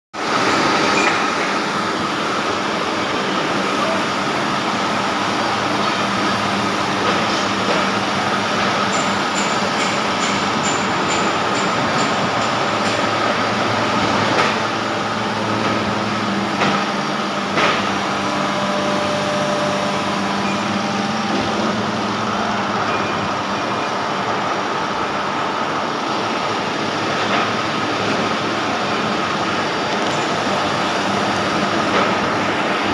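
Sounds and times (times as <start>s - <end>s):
machine mechanical hum: 0.2s - 32.9s.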